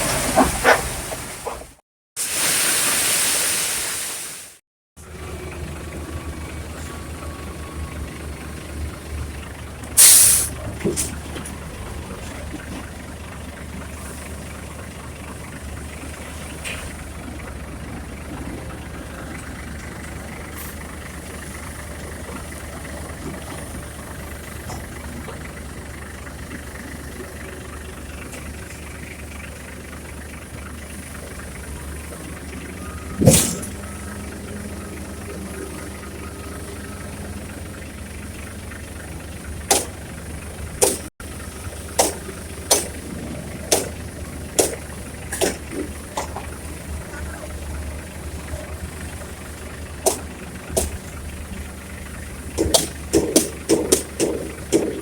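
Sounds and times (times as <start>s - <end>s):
diesel truck engine idling: 5.0s - 55.0s
loud air hiss: 10.0s - 10.5s.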